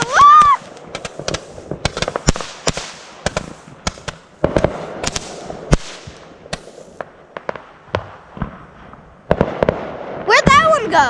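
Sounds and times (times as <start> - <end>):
fireworks hissing: 0.0 - 7.6
fireworks banging and crackling: 0.0 - 11.0.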